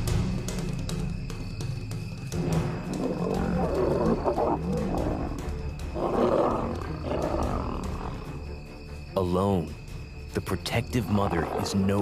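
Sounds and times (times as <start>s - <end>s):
low documentary music: 0.0s - 12.0s
lions snarling and growling: 2.4s - 8.5s.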